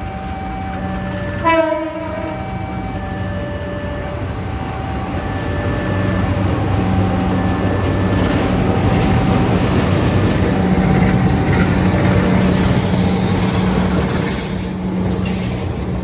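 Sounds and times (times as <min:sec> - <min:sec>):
diesel locomotive engine humming: 0:00.0 - 0:16.0
train horn blast: 0:01.3 - 0:04.2.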